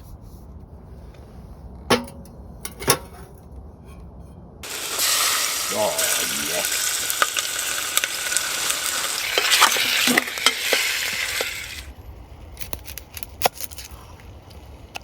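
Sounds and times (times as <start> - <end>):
food sizzling in a pot: 4.6 - 11.9.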